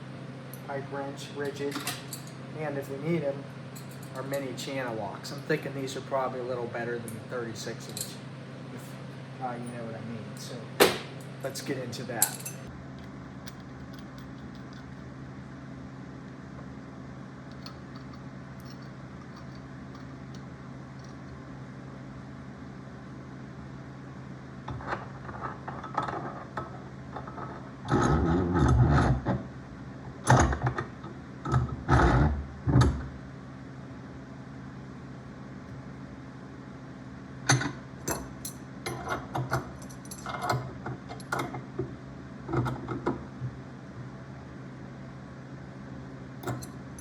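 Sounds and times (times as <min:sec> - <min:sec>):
metal fittings clicking and clanking: 0:46.4 - 0:46.8.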